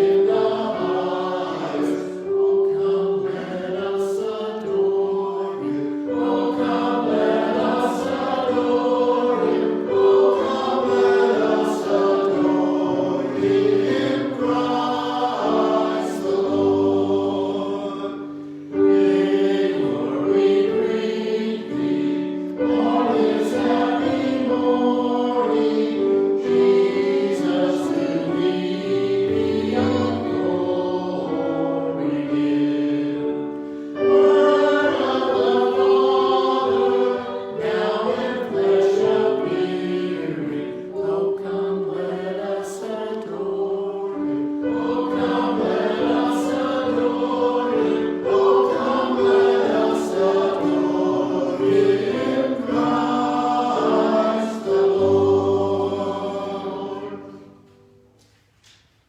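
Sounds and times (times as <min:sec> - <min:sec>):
choir singing: 0:00.0 - 0:58.8.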